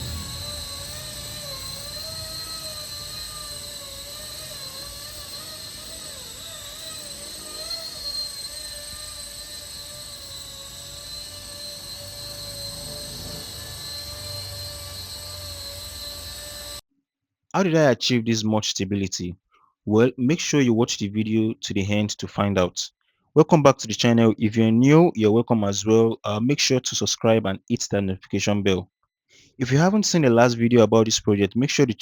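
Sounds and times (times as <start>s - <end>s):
low rumble: 0.0s - 3.4s
rc helicopter rotor whine: 0.0s - 16.8s.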